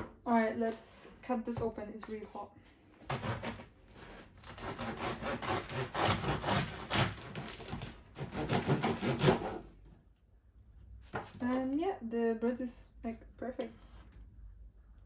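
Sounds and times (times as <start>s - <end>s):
knife sawing through bread crust: 3.1s - 9.7s.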